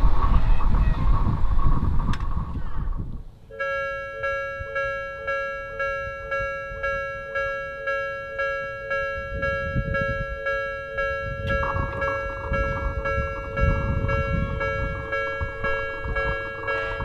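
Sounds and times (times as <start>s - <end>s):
railway crossing warning bell: 3.4s - 17.0s.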